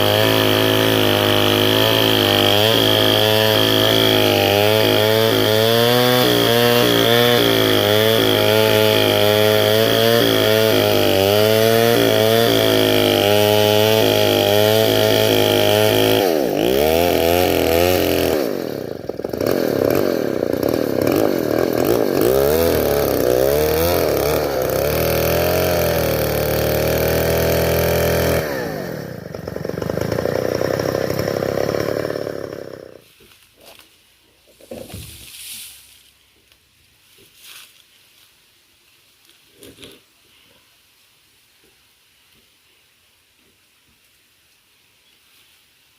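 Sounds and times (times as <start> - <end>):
chainsaw cutting log: 0.0 - 33.0.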